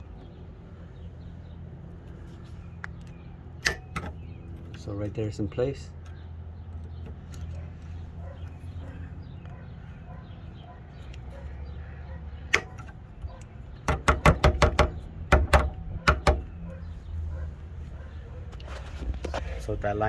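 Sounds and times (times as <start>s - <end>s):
tool clicks and knocks: 2.8s - 4.8s, 12.5s - 16.5s.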